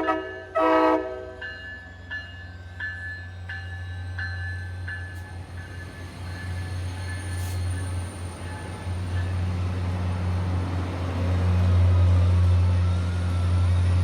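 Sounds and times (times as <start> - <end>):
diesel locomotive engine drone: 0.0 - 14.0.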